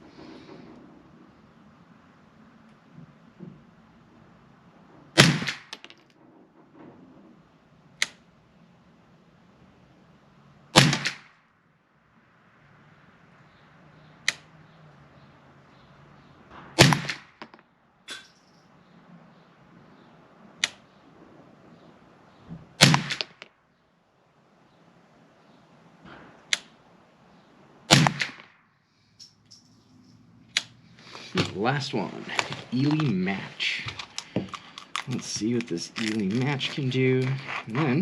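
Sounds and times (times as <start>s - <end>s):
rifle shots: 5.1s - 5.9s, 10.7s - 11.4s, 16.8s - 17.5s, 22.8s - 23.5s, 27.9s - 28.6s.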